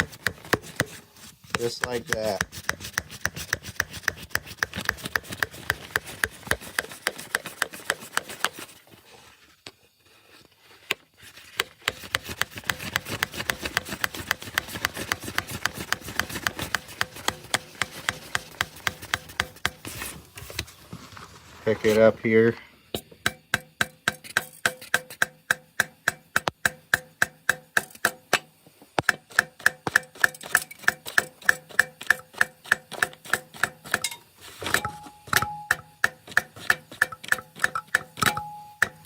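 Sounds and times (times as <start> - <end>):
hammer tapping on metal: 1.5 - 8.5, 23.0 - 39.0.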